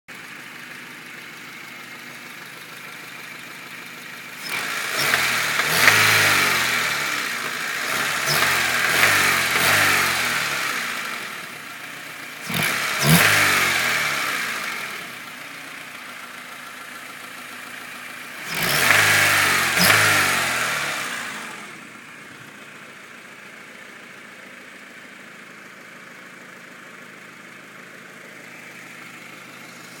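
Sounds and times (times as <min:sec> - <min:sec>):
engine knocking: 0:00.1 - 0:20.1
car engine idling and revving: 0:00.1 - 0:30.0.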